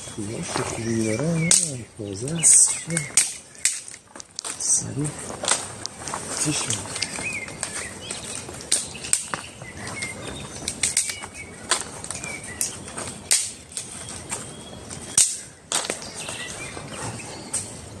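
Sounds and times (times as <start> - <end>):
bird chirps: 0.0 - 5.4, 6.3 - 18.0
steady high-pitched hiss: 0.0 - 18.0
sharp snaps and clicks: 0.6 - 13.9, 15.1 - 16.0.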